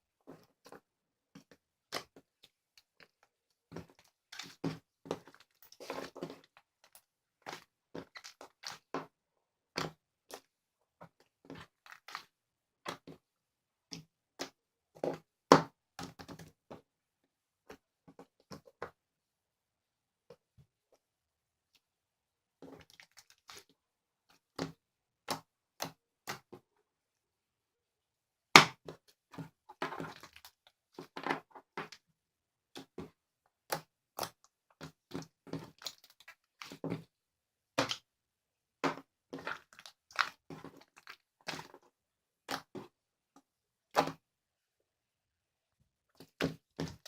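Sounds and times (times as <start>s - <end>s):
slime squelching and popping: 0.3s - 13.2s, 22.6s - 23.7s, 32.7s - 37.1s, 37.7s - 38.1s, 38.8s - 43.0s.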